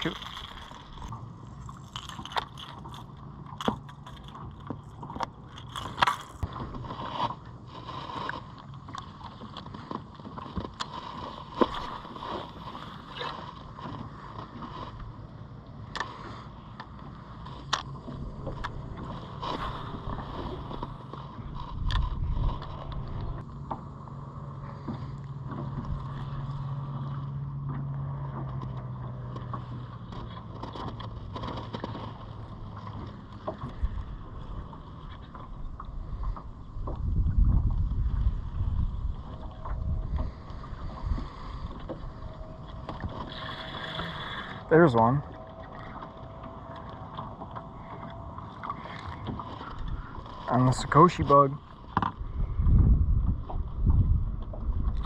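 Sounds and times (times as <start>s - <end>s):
boat motor humming: 0.0s - 55.0s
clicks and knocks against hull: 27.5s - 34.2s, 51.7s - 55.0s.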